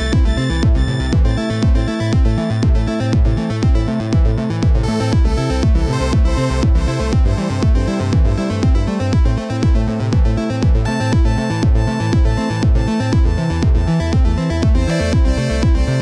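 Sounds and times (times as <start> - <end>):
electronic dance music: 0.0 - 3.8, 10.8 - 16.0
kick drum: 0.0 - 16.0
sustained synth chords: 0.0 - 16.0.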